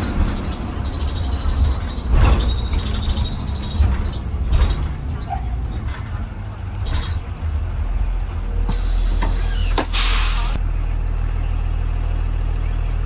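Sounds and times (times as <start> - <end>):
body rattles and knocks: 0.0 - 7.2
bus engine and road rumble: 0.0 - 13.0.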